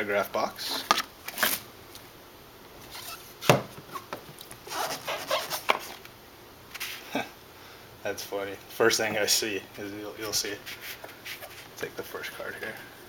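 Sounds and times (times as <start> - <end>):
packaging scraping and rustling: 2.8 - 6.0.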